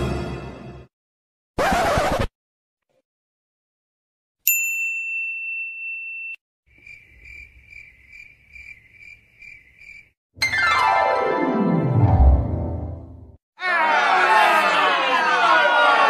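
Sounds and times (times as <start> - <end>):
cricket chirping sound effect: 6.7 - 10.2.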